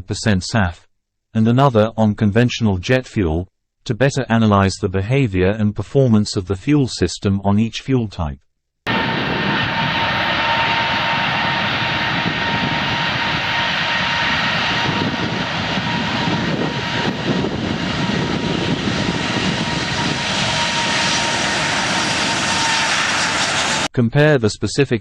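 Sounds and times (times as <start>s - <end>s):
jet engine running: 8.9s - 23.9s.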